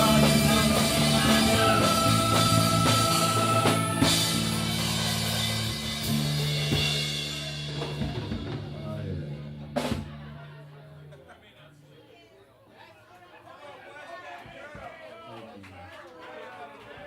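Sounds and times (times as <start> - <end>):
drum hits and fills: 0.0 - 10.4.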